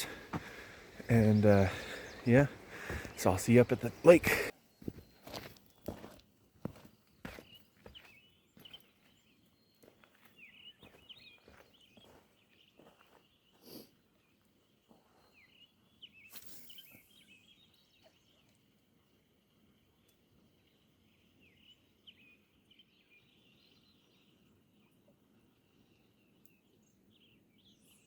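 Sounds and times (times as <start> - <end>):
footsteps walking: 0.0 - 8.8
small birds chirping: 0.0 - 28.0.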